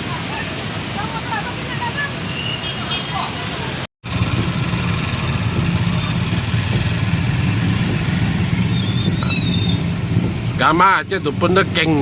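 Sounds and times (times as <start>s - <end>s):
vehicle engine running: 4.0s - 12.0s.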